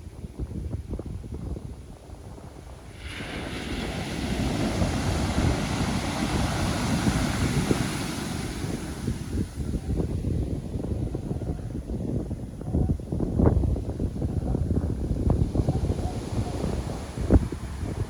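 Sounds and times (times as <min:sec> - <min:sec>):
wind buffeting microphone: 0:00.0 - 0:18.0
ocean wave breaking: 0:02.8 - 0:09.6.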